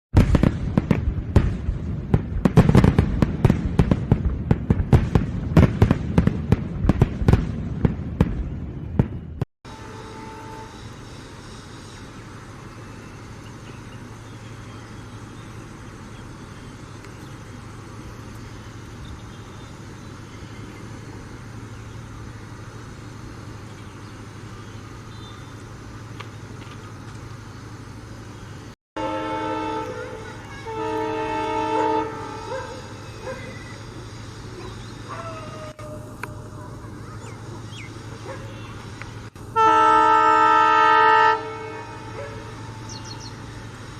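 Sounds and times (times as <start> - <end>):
firecracker bangs: 0.1 - 9.4
steady low hum: 0.2 - 43.9.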